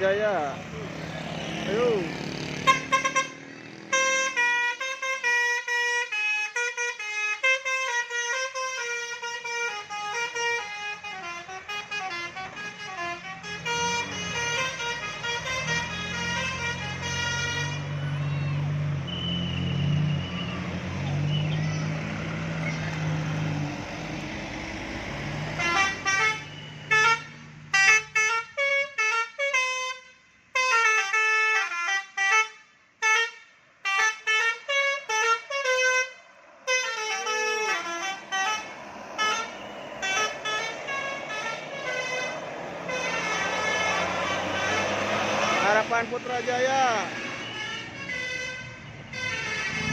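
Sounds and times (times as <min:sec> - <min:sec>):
bus engine humming: 0:00.0 - 0:29.5, 0:33.0 - 0:49.9
road noise: 0:00.0 - 0:49.9
musical bus horn tune: 0:02.6 - 0:18.0, 0:25.5 - 0:49.9.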